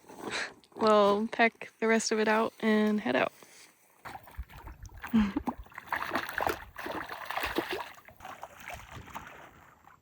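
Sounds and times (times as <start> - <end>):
water splashing and sloshing: 3.4 - 10.0.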